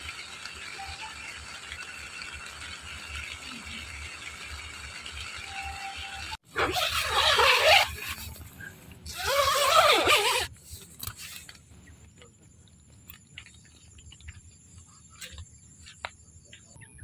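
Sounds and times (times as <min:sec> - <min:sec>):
small ticks: 0:11.0 - 0:16.8.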